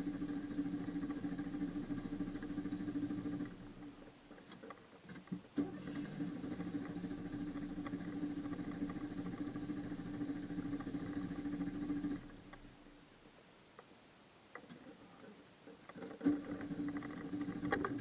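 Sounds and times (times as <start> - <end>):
car engine starting and running: 0.0 - 4.1, 5.5 - 12.7, 16.2 - 18.0
clicks: 14.5 - 18.0.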